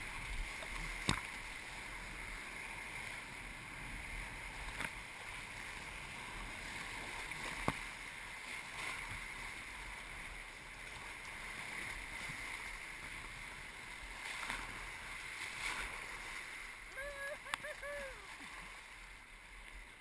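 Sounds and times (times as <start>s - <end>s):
river water rushing: 8.4s - 19.6s.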